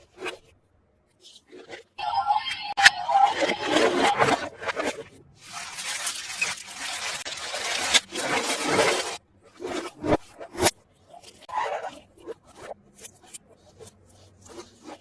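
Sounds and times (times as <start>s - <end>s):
packaging scraping and rustling: 3.3s - 11.5s.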